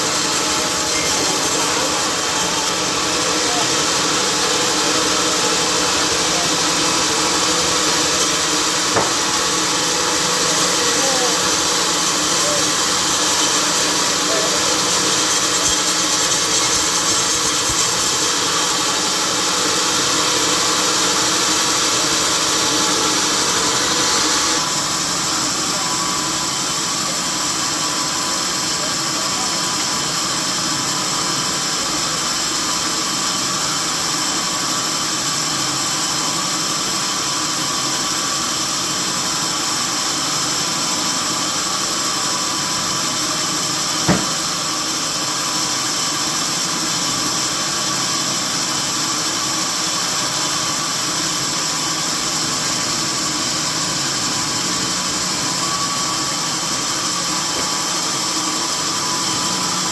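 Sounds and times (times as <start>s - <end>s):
sawmill machinery droning: 0.0s - 59.9s
sharp knock: 8.9s - 9.4s, 44.0s - 44.5s.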